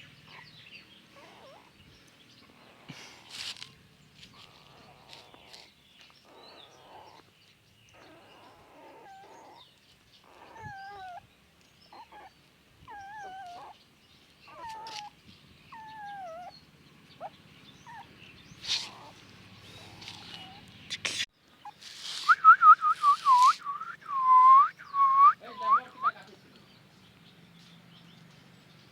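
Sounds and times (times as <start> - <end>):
puppies whining and crying: 8.0 - 9.6, 10.3 - 11.2, 11.9 - 13.8, 14.5 - 16.6, 17.2 - 20.7.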